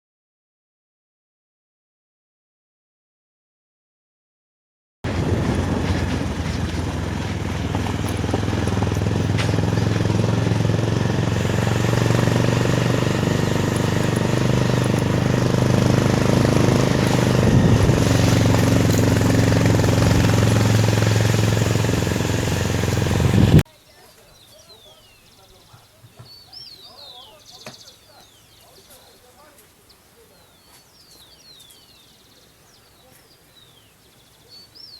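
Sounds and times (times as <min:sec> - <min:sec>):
motor humming: 0:05.1 - 0:23.6.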